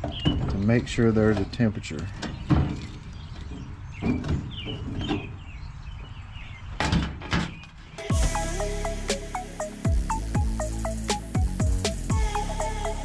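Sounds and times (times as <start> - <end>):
background music: 8.0 - 13.0.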